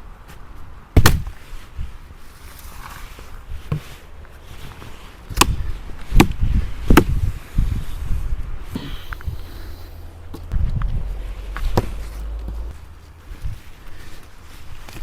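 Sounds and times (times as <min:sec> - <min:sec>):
wind buffeting microphone: 0:05.3 - 0:15.0.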